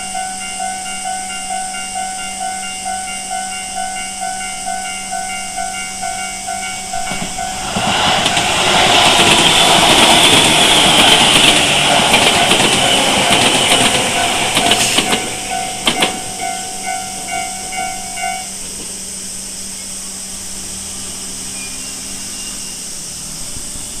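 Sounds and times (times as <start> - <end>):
level-crossing warning bell: 0.0 - 19.4, 21.1 - 23.9
train passing loudly: 0.0 - 24.0
train wheel clacks: 3.2 - 19.0.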